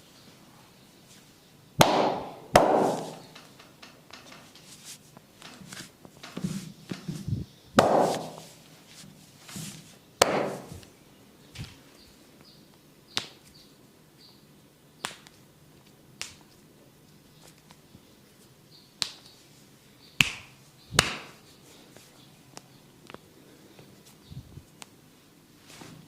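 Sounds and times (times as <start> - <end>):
hands slapping in massage: 1.8 - 3.3, 7.8 - 8.6, 9.5 - 10.9, 13.2 - 13.5, 15.0 - 15.4, 16.2 - 16.6, 19.0 - 19.3, 20.2 - 21.4.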